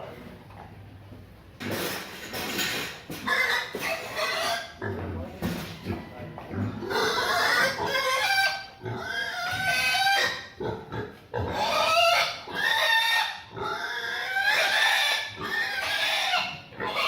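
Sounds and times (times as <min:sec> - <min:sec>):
piglet squealing: 0:03.3 - 0:04.8, 0:06.8 - 0:10.6, 0:11.5 - 0:17.0.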